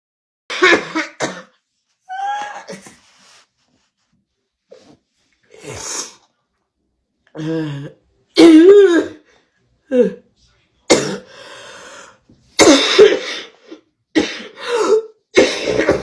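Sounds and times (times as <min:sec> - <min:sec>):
woman coughing hard: 0:00.5 - 0:01.6, 0:10.9 - 0:11.3, 0:12.6 - 0:16.0.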